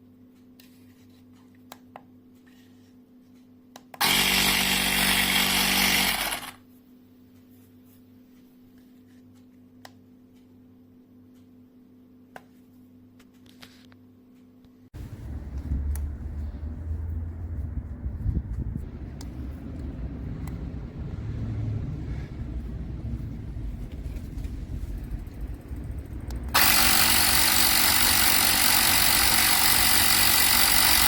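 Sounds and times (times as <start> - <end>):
tyre inflator compressor buzzing: 4.0 - 6.6, 25.6 - 31.0.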